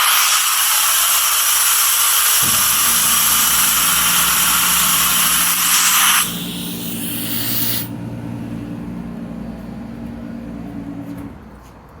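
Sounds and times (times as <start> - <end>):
air compressor hissing: 0.0 - 7.9
compressor motor hum: 1.9 - 11.5.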